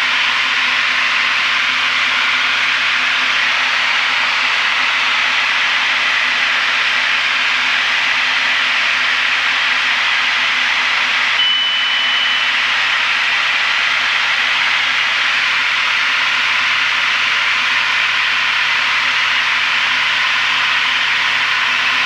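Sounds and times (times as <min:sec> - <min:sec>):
short high beep: 0:11.4 - 0:12.6.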